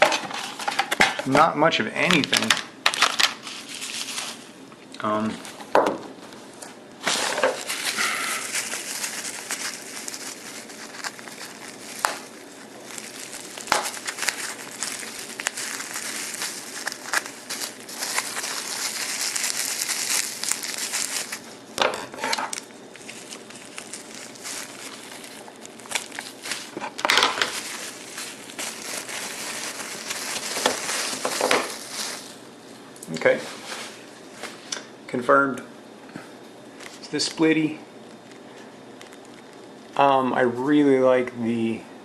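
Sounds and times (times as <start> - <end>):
packing material crinkling: 2.0 - 4.6, 7.0 - 32.8, 38.0 - 39.8.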